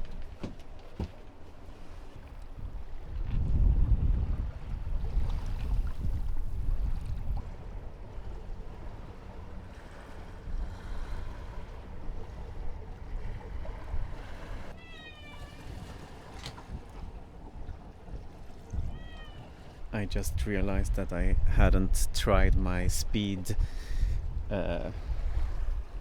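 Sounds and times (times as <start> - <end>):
low rumble of wind and water: 0.0 - 26.0
kitten meowing: 14.8 - 15.6, 18.9 - 19.4.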